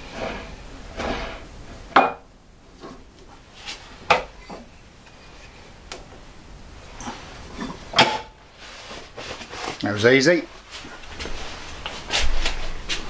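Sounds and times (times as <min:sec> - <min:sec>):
wooden knocks and clunks: 0:04.0 - 0:04.7.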